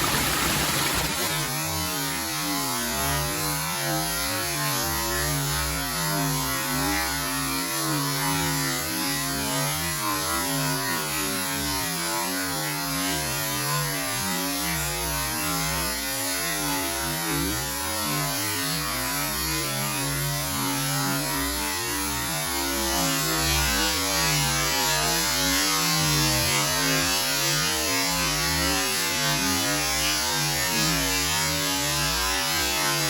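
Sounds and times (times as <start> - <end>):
waterfall rushing: 0.0 - 1.6.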